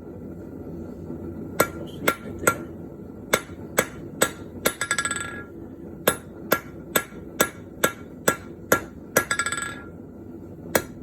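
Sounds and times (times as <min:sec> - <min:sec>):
hammer striking metal on anvil: 0:01.6 - 0:02.7, 0:03.3 - 0:09.9, 0:10.7 - 0:11.0.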